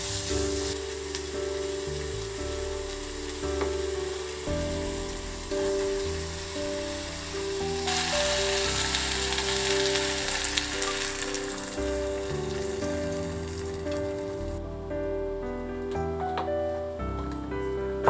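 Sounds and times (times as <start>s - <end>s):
food sizzling in a frying pan: 0.0s - 14.6s
background music: 0.0s - 18.0s.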